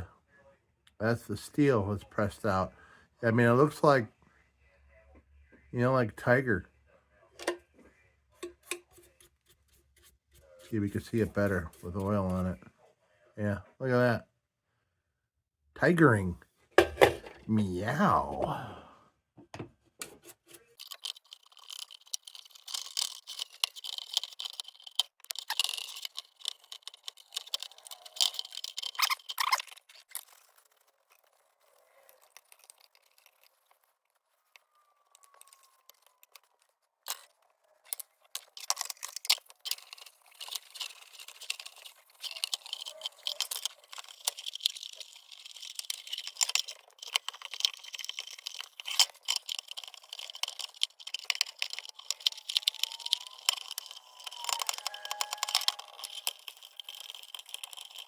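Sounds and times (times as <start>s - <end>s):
rag rubbing metal lantern: 8.4s - 12.6s, 20.0s - 58.0s
metal parts clicking and rattling: 20.6s - 58.0s.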